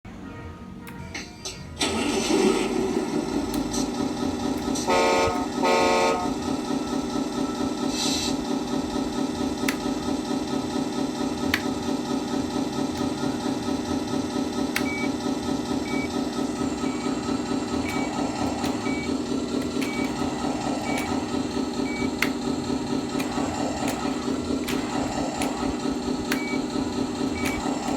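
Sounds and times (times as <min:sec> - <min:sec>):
simulated diesel engine idling: 0:01.8 - 0:27.9
sharp clicks: 0:17.8 - 0:27.9.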